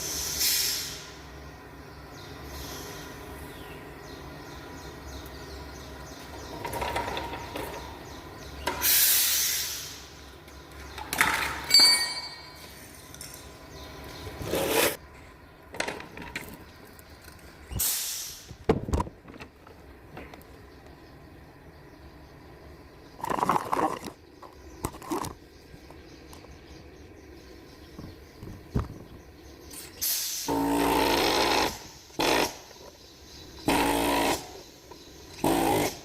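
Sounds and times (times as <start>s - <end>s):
tools and engine parts clattering: 6.3s - 8.0s, 10.8s - 15.0s, 15.7s - 17.6s, 23.2s - 25.4s
ringing metallic clink: 11.7s - 13.4s.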